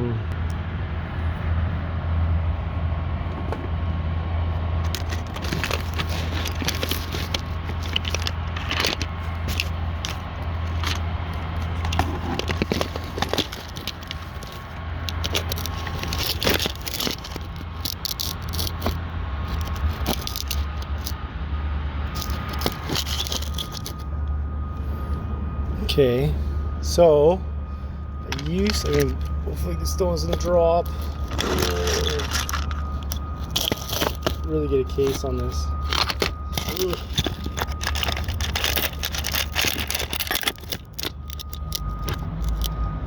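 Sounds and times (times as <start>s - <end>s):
steady low hum: 0.0s - 43.0s
phone handling clicks and scrapes: 4.8s - 21.2s, 22.1s - 24.1s, 28.3s - 29.4s, 30.2s - 42.8s.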